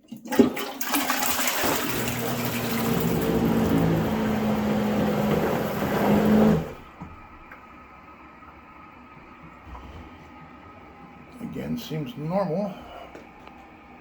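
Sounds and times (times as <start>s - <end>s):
toilet flushing water: 0.0s - 7.5s
pump motor humming: 0.6s - 7.0s.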